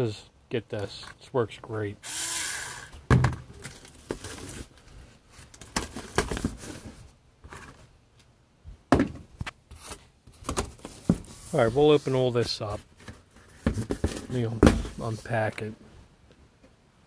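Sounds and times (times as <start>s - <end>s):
cardboard rustling: 3.5s - 7.9s, 9.7s - 15.6s
knocks and thumps on cardboard box: 8.9s - 9.3s, 10.4s - 11.3s, 13.6s - 15.0s.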